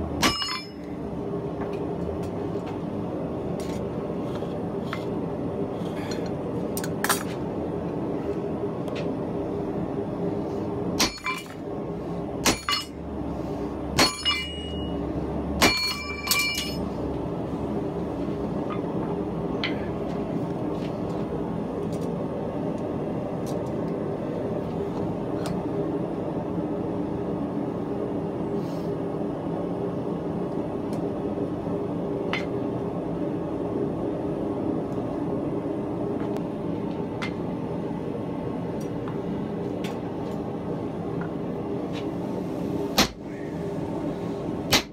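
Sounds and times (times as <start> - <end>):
forge humming: 0.0 - 44.9
steel striking steel: 0.2 - 0.9, 11.0 - 11.6, 12.4 - 13.0, 14.0 - 14.9, 15.6 - 16.8.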